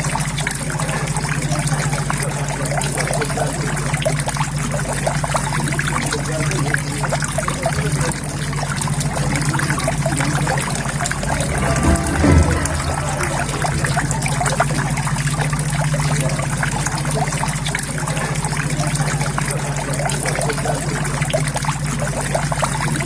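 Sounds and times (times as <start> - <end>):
water trickling into a pond: 0.0 - 11.0, 14.6 - 23.0
low hum: 9.1 - 16.2.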